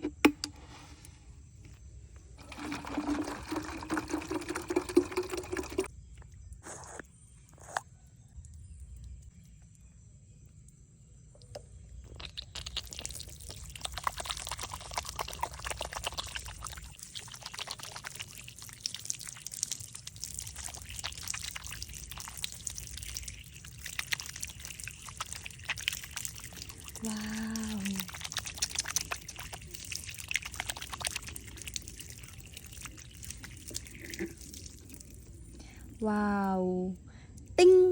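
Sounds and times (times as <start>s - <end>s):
water pouring and trickling: 2.2s - 6.5s, 11.4s - 36.5s.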